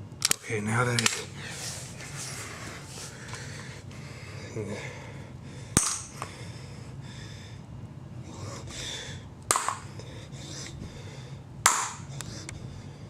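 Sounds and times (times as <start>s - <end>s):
faint handling rustle: 1.2s - 3.7s
hammer striking steel: 5.8s - 6.1s.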